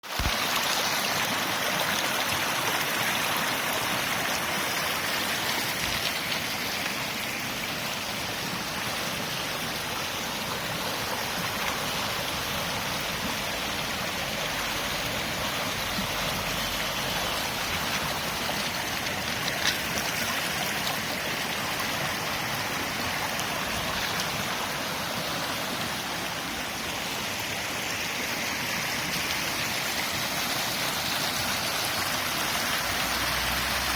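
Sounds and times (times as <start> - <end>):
river water rushing: 0.0 - 33.9.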